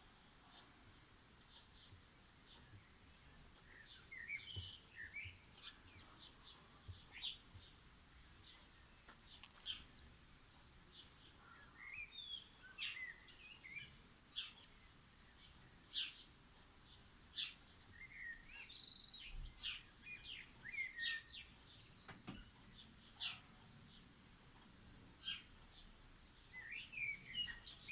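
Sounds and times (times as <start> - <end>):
songbirds chirping: 0.0 - 27.9.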